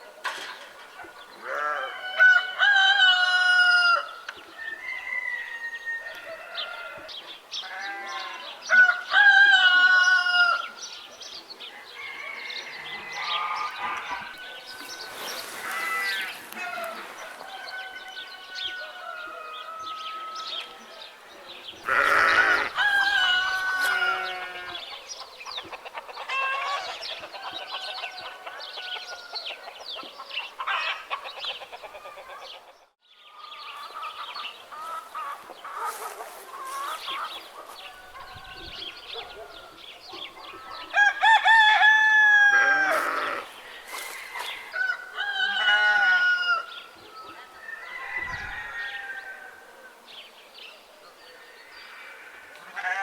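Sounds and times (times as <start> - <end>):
roosters crowing: 1.2 - 10.8, 11.6 - 20.8, 21.8 - 25.1, 26.0 - 29.8, 33.4 - 50.1, 51.4 - 53.0
hens clucking: 21.8 - 32.8, 33.8 - 38.3.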